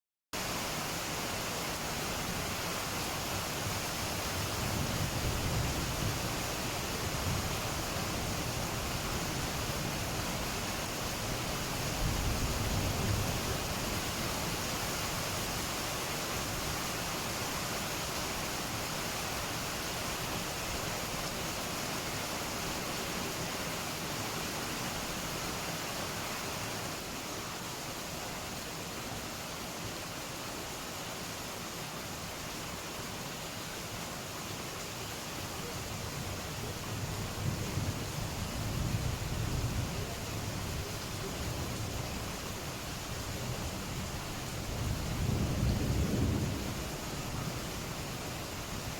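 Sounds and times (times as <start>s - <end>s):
steady rain falling: 0.4s - 48.9s
low thunder rumbles: 43.2s - 48.0s.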